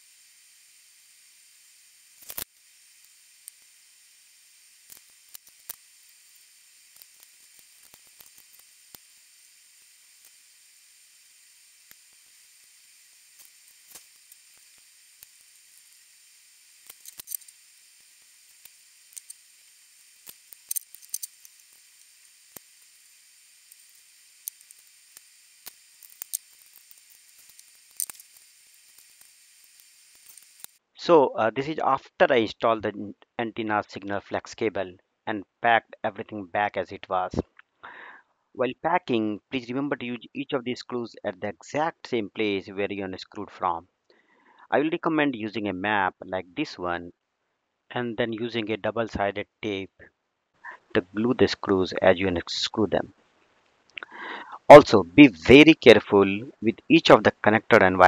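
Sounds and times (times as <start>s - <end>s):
faint steady hiss: 0.0s - 58.0s
small tools clicking and tapping: 16.8s - 17.6s, 20.2s - 22.8s, 23.7s - 30.8s.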